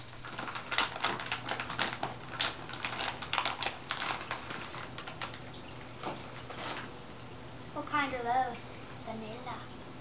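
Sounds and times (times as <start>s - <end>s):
dog chewing crunchy cookie: 0.0s - 6.8s.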